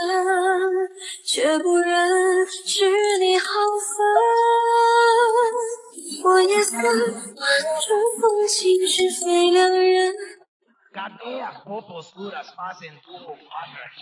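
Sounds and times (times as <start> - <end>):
woman singing: 0.0 - 10.5
soft music: 1.6 - 10.2.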